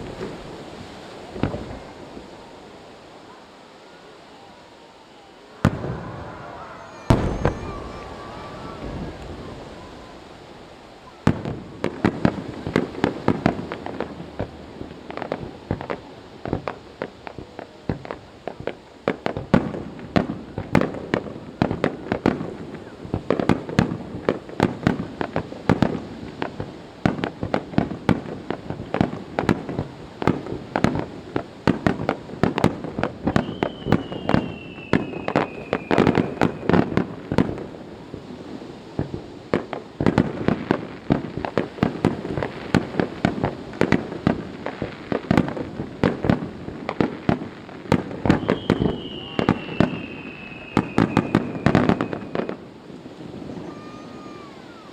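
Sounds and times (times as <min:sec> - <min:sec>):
fireworks bursting: 0:00.0 - 0:54.9
high falling whistle: 0:02.2 - 0:11.2, 0:33.3 - 0:36.8, 0:48.4 - 0:52.6, 0:53.4 - 0:54.9.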